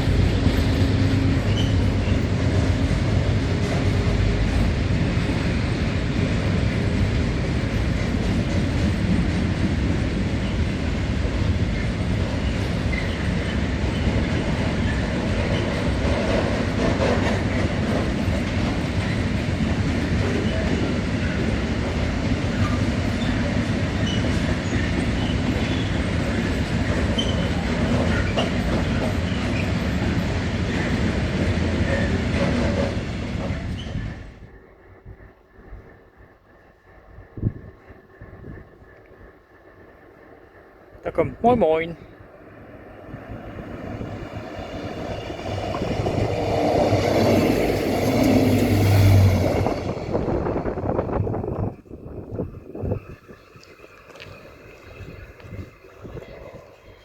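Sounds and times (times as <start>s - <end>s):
wheels clickety-clack: 0.0s - 34.5s, 43.0s - 57.0s
train rumbling on rails: 0.0s - 57.0s
high wheel squeals: 0.6s - 2.3s, 22.5s - 30.0s.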